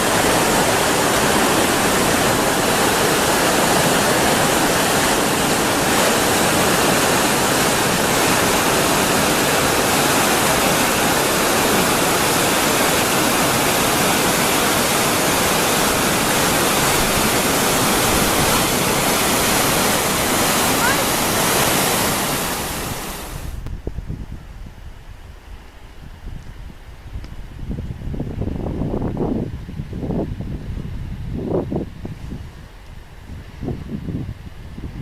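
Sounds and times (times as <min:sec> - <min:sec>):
waterfall rushing: 0:00.0 - 0:23.6.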